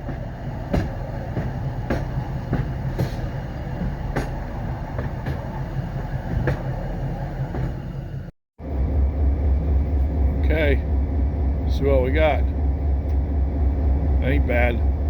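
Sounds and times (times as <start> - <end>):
metallic clanks from train cars: 0.0 - 8.3
freight train rumbling: 0.0 - 15.0.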